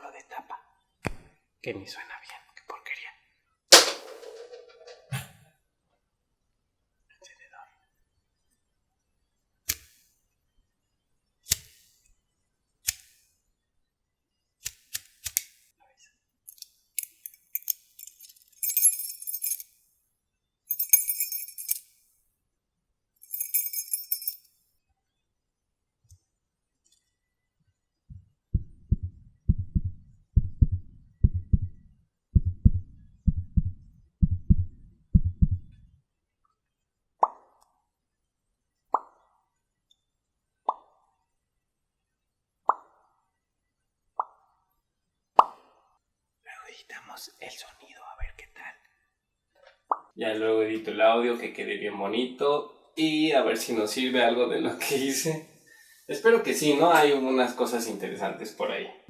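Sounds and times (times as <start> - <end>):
small metal objects jingling: 16.5 - 19.7, 20.7 - 21.9, 23.2 - 24.5.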